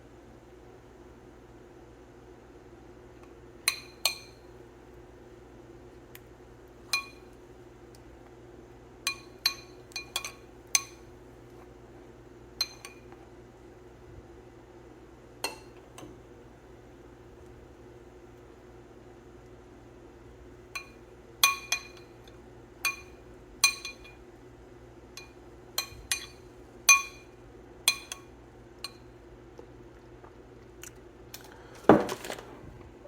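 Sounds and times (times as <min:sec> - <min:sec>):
spoon clinking against dish: 0:06.9 - 0:07.3.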